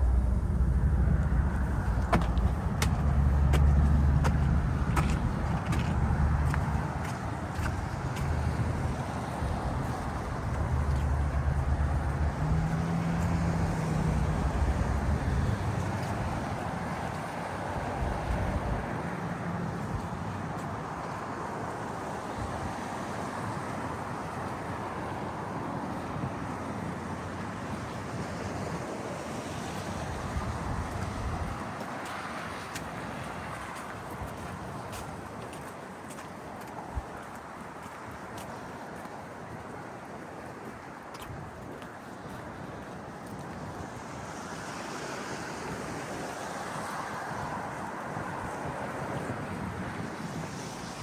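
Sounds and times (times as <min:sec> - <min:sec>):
low vehicle engine hum: 0:00.0 - 0:16.9
traffic or wind roar: 0:00.0 - 0:51.0.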